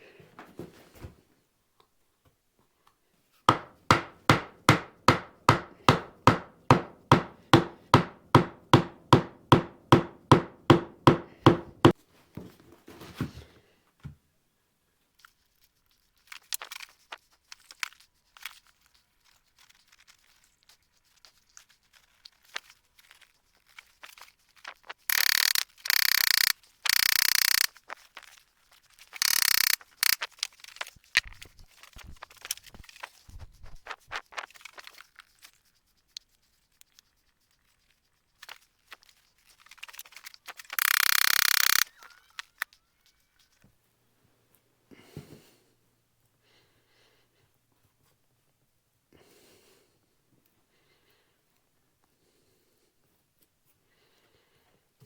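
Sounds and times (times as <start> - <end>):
mallet striking wood: 3.5 - 12.0.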